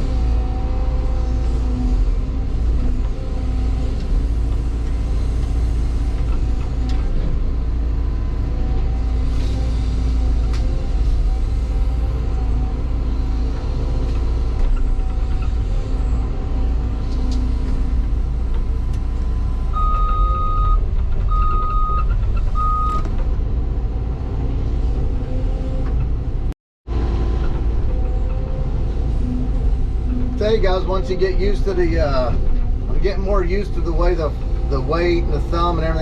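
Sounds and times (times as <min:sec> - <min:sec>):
excavator diesel engine running: 0:00.0 - 0:36.0
short electronic beeps: 0:19.8 - 0:23.0.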